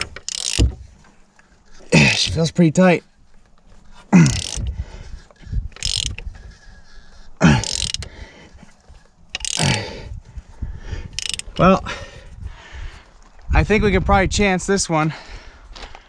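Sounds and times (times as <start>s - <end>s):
ratchet turning engine: 0.0s - 0.8s, 4.2s - 4.8s, 5.7s - 6.4s, 7.4s - 8.2s, 9.3s - 10.1s, 11.1s - 11.7s.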